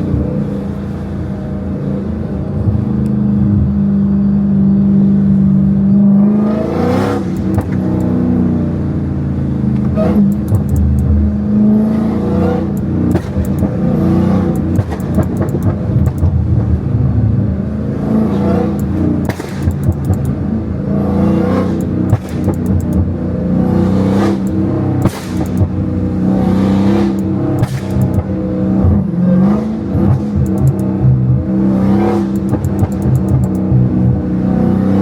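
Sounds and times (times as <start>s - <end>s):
car engine revving: 0.0s - 35.0s
exhaust pops crackling: 7.2s - 8.1s, 9.7s - 11.4s, 12.6s - 13.8s, 14.5s - 16.7s, 18.7s - 20.5s, 21.7s - 23.2s, 24.4s - 25.8s, 27.1s - 29.0s, 30.1s - 31.0s, 32.3s - 34.2s.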